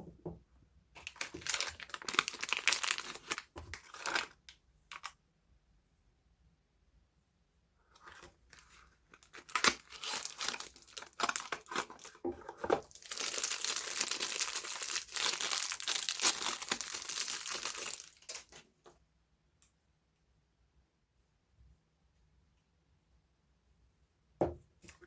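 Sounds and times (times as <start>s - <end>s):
wrapper crinkling and tearing: 1.0s - 5.1s, 8.0s - 18.7s.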